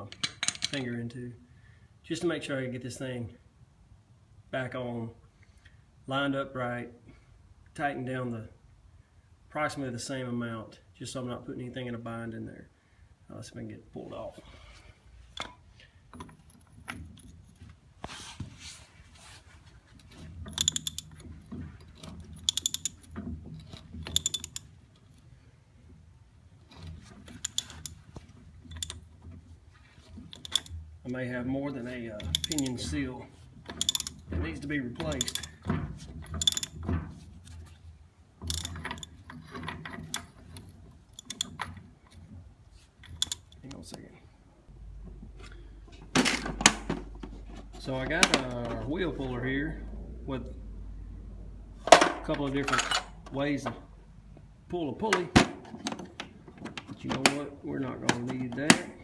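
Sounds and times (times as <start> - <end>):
hand ratchet clicking: 20.5 - 21.2, 22.4 - 23.1, 24.0 - 24.7, 27.4 - 28.0, 30.3 - 30.7, 32.3 - 32.8, 33.8 - 34.2, 36.4 - 36.8, 38.5 - 39.1, 41.2 - 41.5, 43.2 - 43.5
hand tools clinking on metal: 20.5 - 21.3, 21.9 - 24.7, 27.4 - 28.0, 32.2 - 32.9, 33.7 - 34.3, 35.0 - 35.6, 36.2 - 36.8, 38.5 - 41.6, 52.2 - 53.4.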